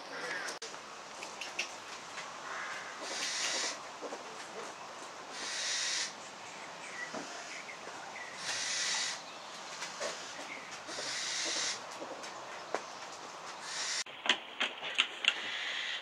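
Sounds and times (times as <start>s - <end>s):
owl hissing: 2.4s - 3.9s, 5.3s - 6.2s, 6.9s - 11.9s, 13.6s - 14.1s, 15.3s - 16.0s.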